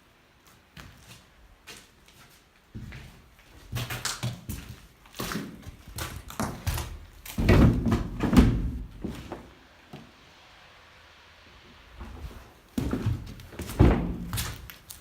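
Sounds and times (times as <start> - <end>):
echoing knocks and thuds: 6.7 - 8.9, 12.8 - 14.5.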